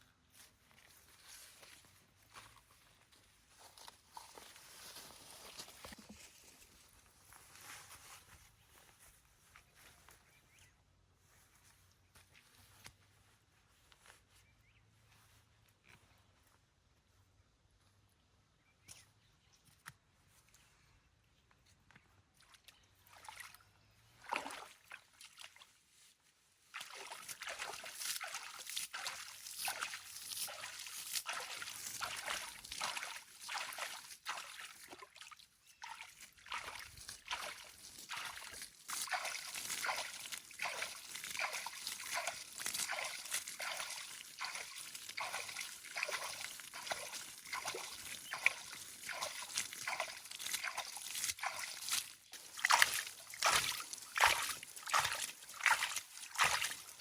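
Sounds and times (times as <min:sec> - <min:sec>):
water sloshing and splashing: 0:22.4 - 0:25.7, 0:26.7 - 0:57.0.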